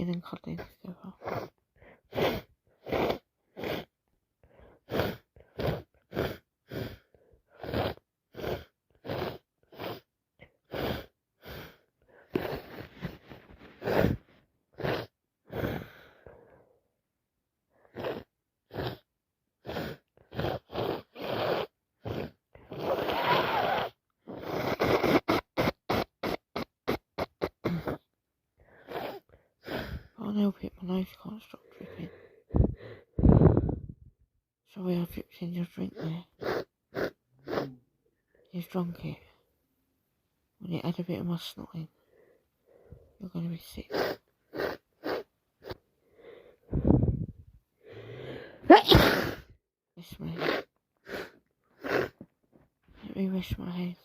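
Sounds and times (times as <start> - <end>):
woman sniffling and gasping: 22.7 - 30.2, 31.6 - 34.0, 43.9 - 49.6, 50.2 - 52.2
woman sneezing: 48.6 - 49.5.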